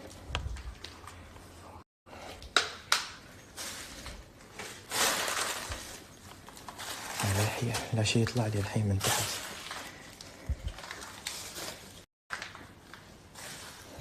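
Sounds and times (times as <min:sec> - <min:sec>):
crunching rustling noise: 0:03.5 - 0:14.0.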